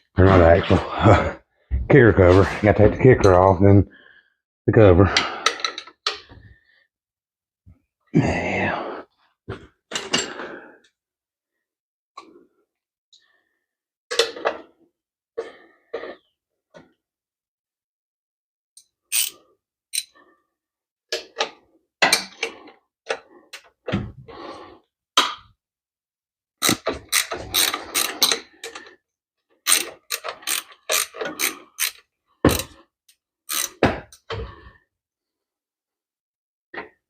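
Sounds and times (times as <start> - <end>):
ratchet wrench clicking: 19.1 - 20.1, 26.6 - 28.3, 29.7 - 32.7, 33.5 - 33.8.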